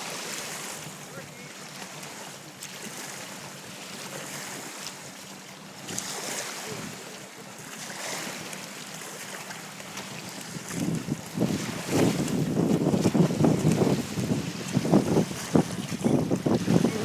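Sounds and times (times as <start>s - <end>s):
water splashing and lapping: 0.0s - 17.0s
wind buffeting microphone: 10.2s - 17.0s.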